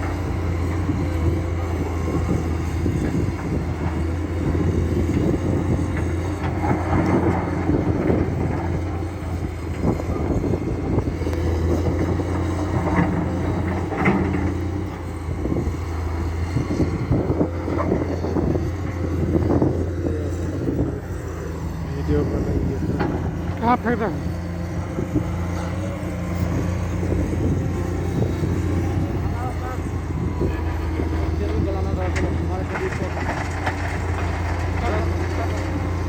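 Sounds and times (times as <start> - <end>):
excavator diesel engine running: 0.0 - 36.0
machine clanks and scrapes: 30.5 - 35.7.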